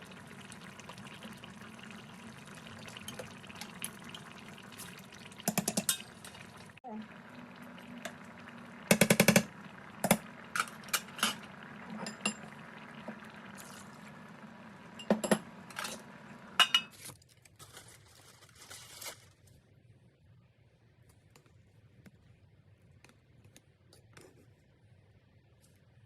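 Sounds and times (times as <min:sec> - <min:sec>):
metal dishes clinking: 0:12.0 - 0:12.6, 0:15.0 - 0:17.0.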